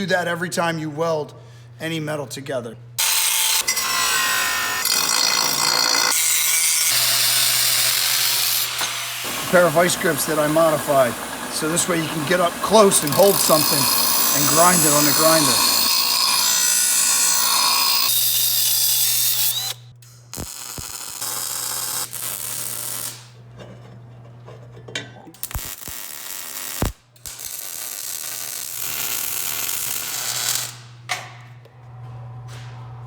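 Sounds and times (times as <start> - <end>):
power tool hissing and crackling: 4.8 - 18.1, 19.3 - 23.3, 25.4 - 30.8
electrical hum: 8.8 - 18.1, 27.6 - 33.0.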